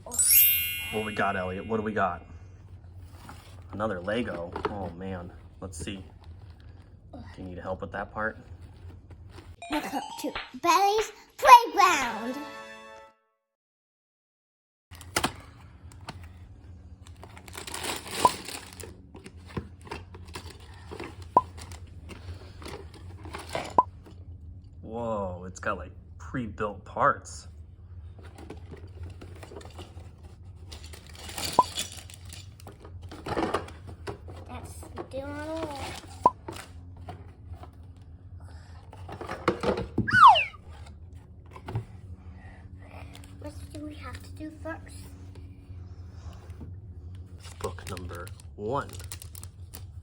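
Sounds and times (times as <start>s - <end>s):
packaging crinkling and tearing: 17.0s - 20.8s, 47.4s - 50.0s
plastic bags rustling: 17.2s - 19.1s
high-pitched falling squeal: 40.1s - 40.6s.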